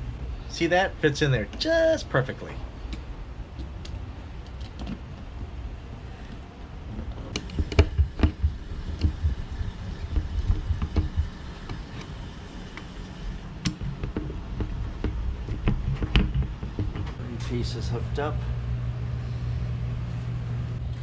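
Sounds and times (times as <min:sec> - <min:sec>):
low rumble: 0:06.9 - 0:11.8.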